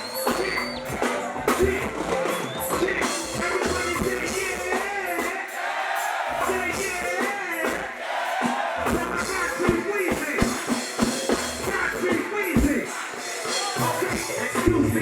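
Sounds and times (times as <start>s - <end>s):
person singing: 0.0s - 5.7s, 8.8s - 15.0s
drums: 0.0s - 15.0s.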